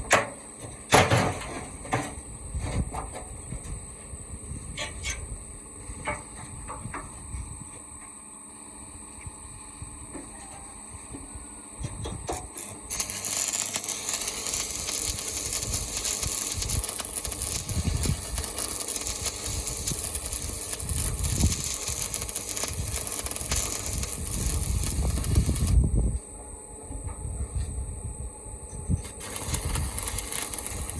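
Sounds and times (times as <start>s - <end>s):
electric arc welding crackle: 12.3s - 25.9s, 29.0s - 30.9s.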